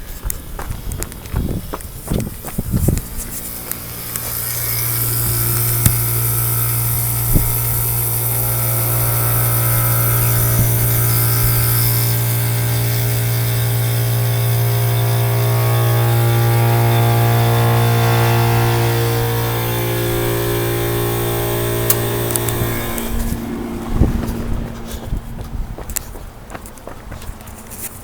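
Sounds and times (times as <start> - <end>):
footsteps: 0.0 - 4.7, 22.4 - 28.0
many-toned siren drone: 8.1 - 25.0.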